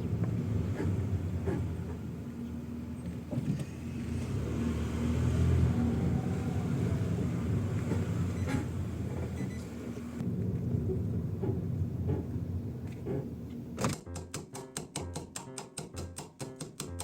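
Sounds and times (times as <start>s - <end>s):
car road noise rumble: 0.0s - 13.9s
faint rising and falling tone: 3.7s - 11.2s.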